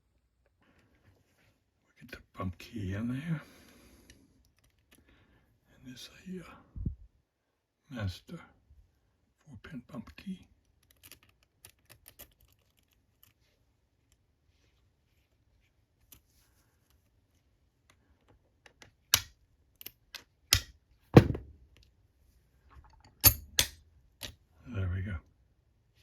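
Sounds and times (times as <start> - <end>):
sharp metallic knocks on padlock: 20.5 - 21.5, 23.2 - 23.8.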